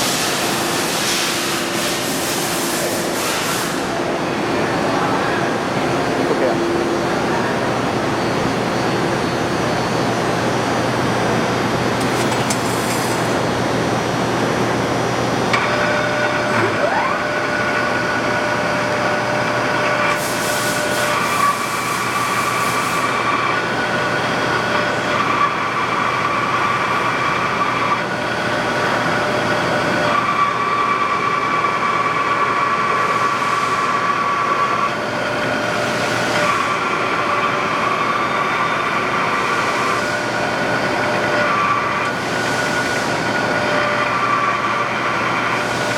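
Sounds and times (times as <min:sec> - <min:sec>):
milling machine drone: 0:00.0 - 0:45.9
whining gear tones: 0:15.5 - 0:20.2.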